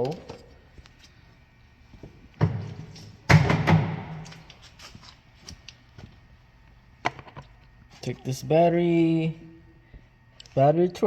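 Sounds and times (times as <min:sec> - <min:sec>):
car parts thumping: 0:02.4 - 0:04.4.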